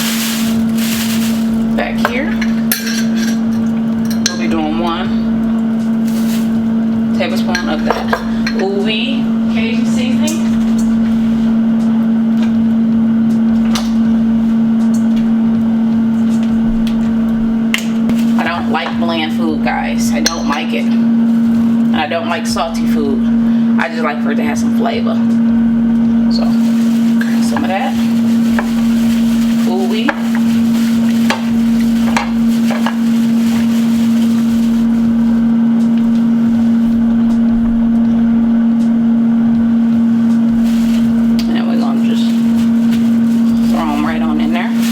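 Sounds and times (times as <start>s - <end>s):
food frying hiss: 0.0s - 2.0s, 26.4s - 35.6s
kitchen appliance humming: 0.0s - 44.9s.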